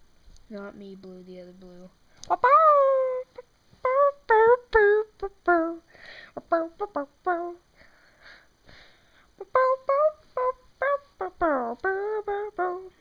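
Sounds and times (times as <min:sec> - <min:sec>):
child singing: 0:02.3 - 0:07.6, 0:09.4 - 0:13.0.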